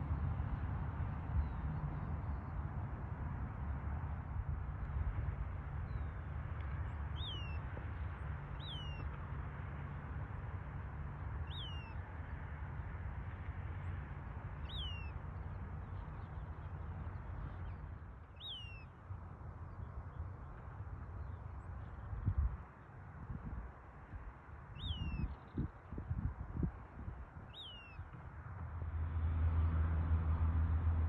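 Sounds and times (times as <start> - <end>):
bird whistled calls: 11.5 - 11.9, 18.4 - 18.8.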